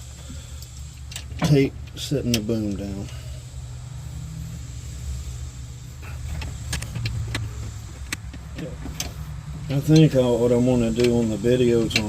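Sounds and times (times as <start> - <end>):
short metallic clicks: 6.1 - 9.2.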